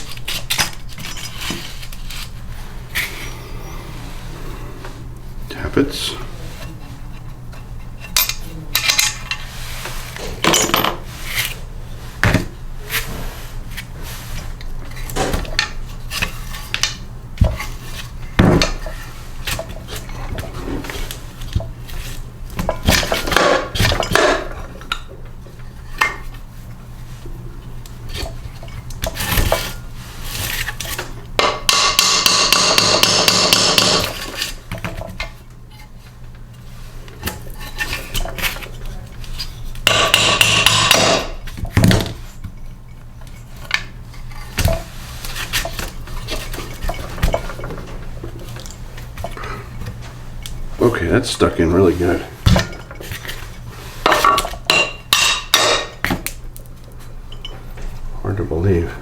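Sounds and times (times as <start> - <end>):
steady low hum: 0.0 - 59.0
metal parts clinking on workbench: 10.4 - 11.0.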